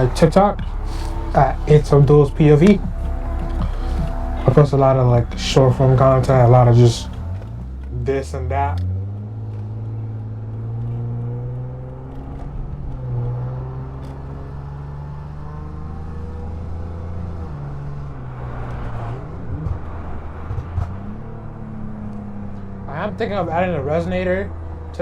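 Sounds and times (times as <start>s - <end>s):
car engine running while driving: 0.0s - 25.0s.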